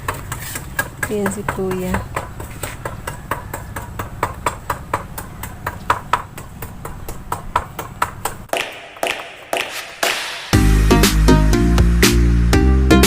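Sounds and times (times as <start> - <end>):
tool tapping on concrete: 0.0 - 10.2.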